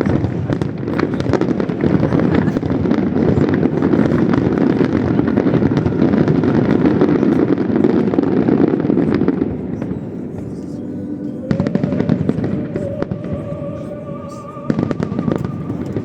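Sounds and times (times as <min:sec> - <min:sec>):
fireworks booms and crackles: 0:00.0 - 0:10.8, 0:11.5 - 0:13.7, 0:14.7 - 0:16.0.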